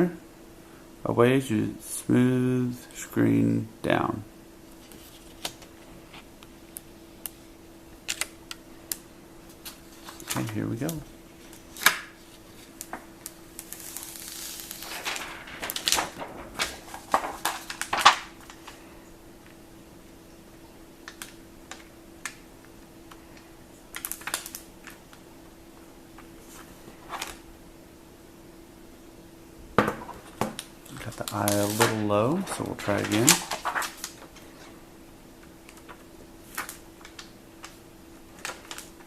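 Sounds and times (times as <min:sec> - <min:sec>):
faint steady hum: 0:00.0 - 0:39.0
plastic film crinkling: 0:08.0 - 0:18.8, 0:23.1 - 0:25.2, 0:30.3 - 0:34.8, 0:35.6 - 0:39.0.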